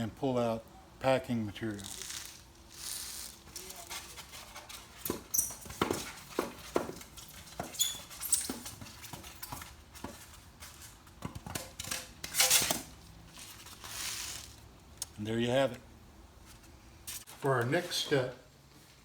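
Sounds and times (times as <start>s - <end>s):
short high squeaks: 7.7s - 8.6s.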